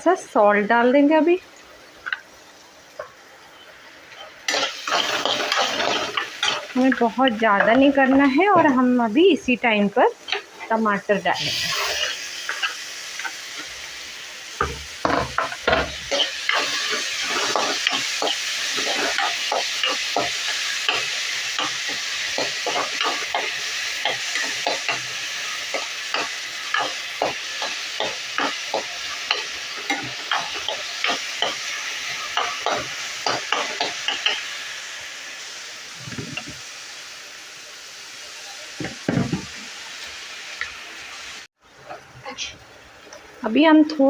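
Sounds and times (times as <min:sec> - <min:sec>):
vegetables sizzling in hot oil: 0:00.0 - 0:44.0.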